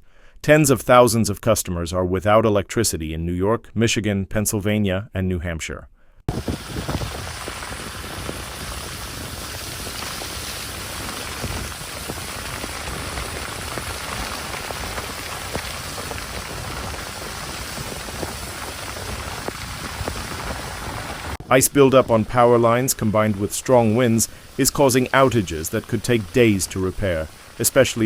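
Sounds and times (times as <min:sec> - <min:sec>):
rain pattering on a surface: 0:06.3 - 0:28.0.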